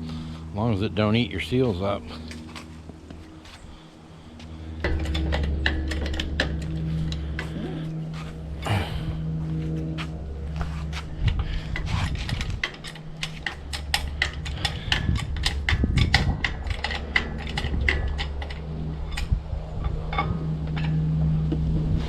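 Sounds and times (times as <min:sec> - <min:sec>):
steady low hum: 0:00.0 - 0:22.0
hydraulic jack metallic clicks: 0:11.3 - 0:19.4.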